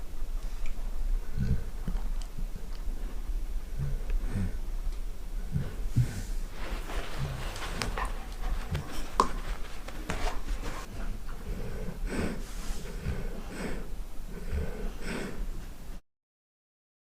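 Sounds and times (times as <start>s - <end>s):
dog snoring: 10.1s - 15.4s.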